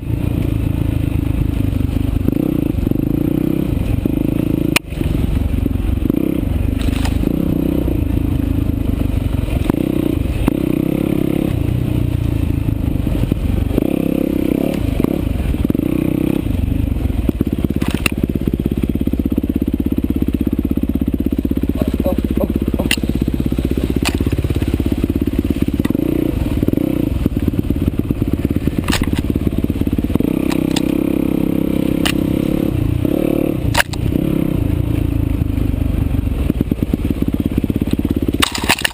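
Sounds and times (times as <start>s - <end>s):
motorcycle engine revving: 0.0s - 38.9s
sharp clicks and clatter: 6.7s - 7.3s, 17.7s - 18.2s, 22.8s - 23.1s, 24.0s - 24.4s, 28.7s - 29.4s, 30.3s - 31.0s, 32.0s - 32.2s, 33.7s - 34.1s, 37.8s - 38.9s.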